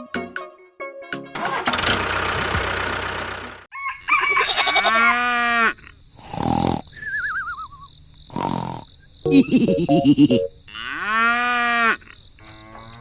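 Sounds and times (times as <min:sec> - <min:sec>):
rooster crowing: 0:03.7 - 0:05.7.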